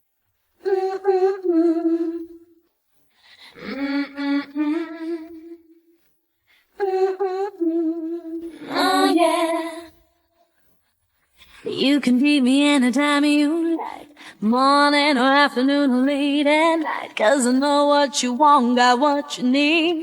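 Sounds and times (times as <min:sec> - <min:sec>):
person humming: 0:00.6 - 0:02.4, 0:03.6 - 0:05.6, 0:06.8 - 0:09.8.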